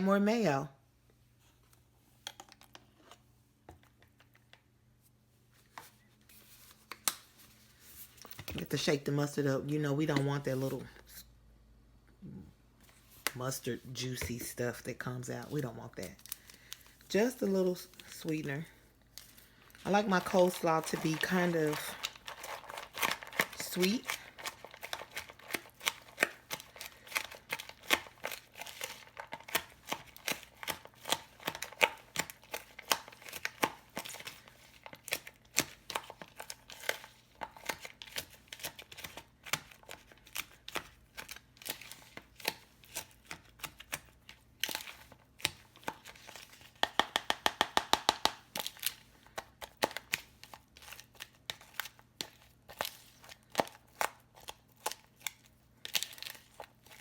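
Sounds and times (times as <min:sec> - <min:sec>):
utensil stirring coleslaw in a bowl: 0:15.6 - 0:57.0.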